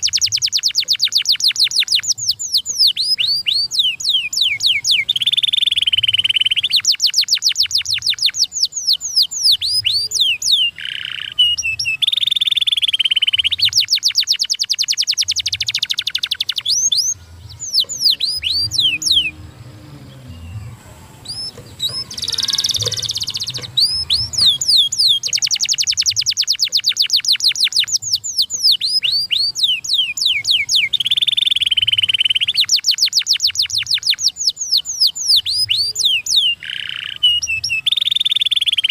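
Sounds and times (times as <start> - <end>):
canary singing: 0.0 - 38.9.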